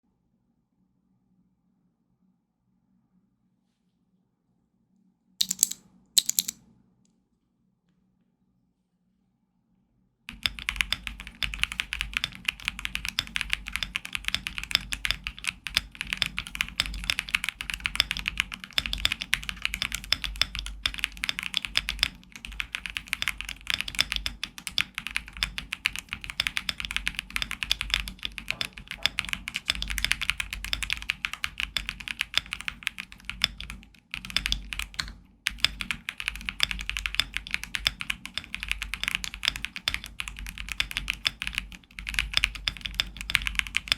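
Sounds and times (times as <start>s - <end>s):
mechanical keyboard typing: 5.4s - 6.6s, 10.3s - 43.9s.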